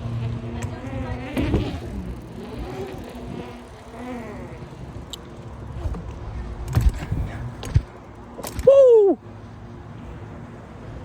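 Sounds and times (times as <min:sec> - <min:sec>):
bike mechanical hum: 0:00.0 - 0:11.0.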